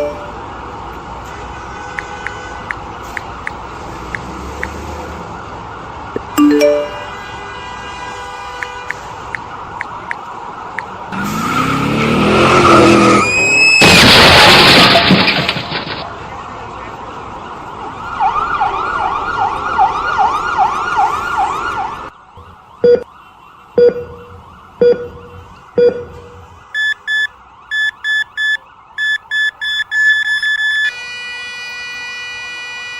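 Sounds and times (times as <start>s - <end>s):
car alarm beeping: 0.0s - 0.3s, 6.2s - 7.2s, 22.4s - 23.1s, 23.8s - 31.2s
siren yelping: 0.0s - 0.4s, 18.2s - 31.0s
short honks: 1.3s - 2.8s.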